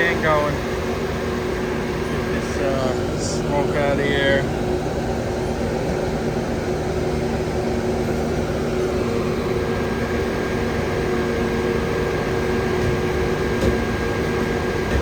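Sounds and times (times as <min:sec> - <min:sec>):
ventilation fan drone: 0:00.0 - 0:15.0.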